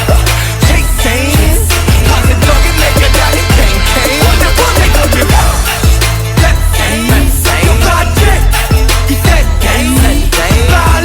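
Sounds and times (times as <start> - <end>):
loud music with heavy bass beat: 0.0 - 11.0.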